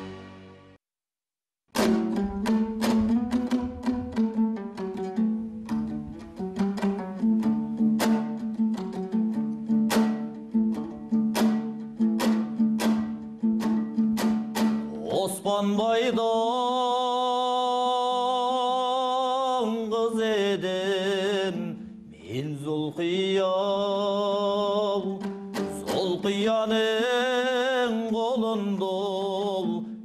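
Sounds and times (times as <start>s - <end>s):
plucked string notes: 1.7s - 16.4s, 19.7s - 28.8s
held melodic notes with vibrato: 1.8s - 15.2s.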